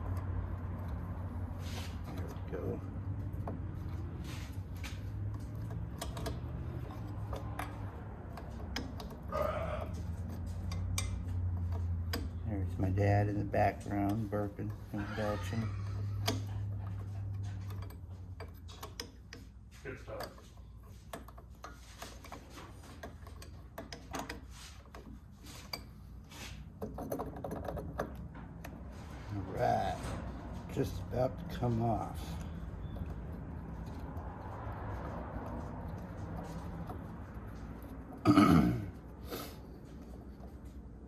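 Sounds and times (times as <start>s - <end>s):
socket ratchet clicking: 5.1s - 12.4s
wrench clicking on metal: 5.1s - 25.9s
person belching: 38.2s - 38.9s.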